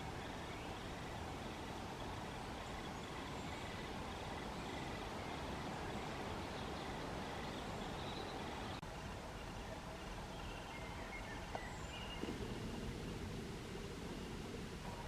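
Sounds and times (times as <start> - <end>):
faint high-pitched bird calls: 0.0 - 12.5
outdoor background rumble: 11.5 - 15.0.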